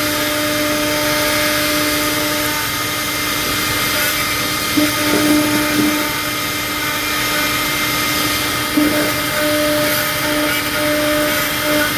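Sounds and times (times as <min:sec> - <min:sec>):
milling machine whirring: 0:00.0 - 0:11.9
humming tone: 0:04.7 - 0:07.8, 0:08.5 - 0:11.9.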